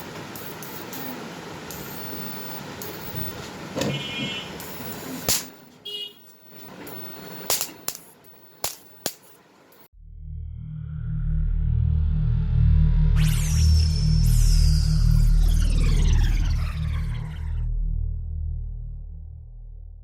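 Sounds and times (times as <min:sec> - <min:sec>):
steady noisy background: 0:00.0 - 0:09.9
sharp clicks: 0:00.3 - 0:03.1, 0:06.3 - 0:09.9
short high-pitched beeps: 0:00.4 - 0:03.4, 0:04.6 - 0:05.2, 0:06.4 - 0:08.6
music with deep bass line: 0:09.9 - 0:20.0.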